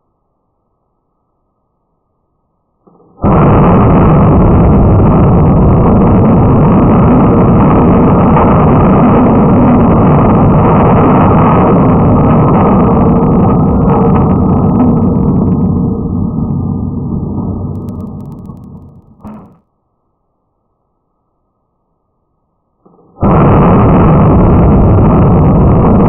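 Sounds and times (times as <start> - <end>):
loud steady rumbling: 2.9 - 19.6, 23.2 - 26.0.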